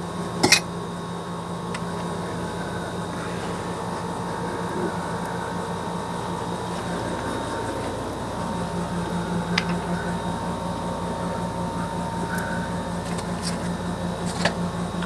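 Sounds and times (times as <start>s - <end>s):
steady mechanical hum: 0.0s - 15.0s.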